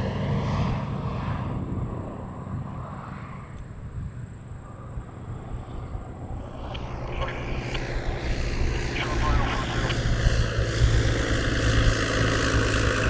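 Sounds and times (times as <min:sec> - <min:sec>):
distant propeller aircraft droning: 0:00.0 - 0:13.0
faint clicks: 0:06.6 - 0:08.4.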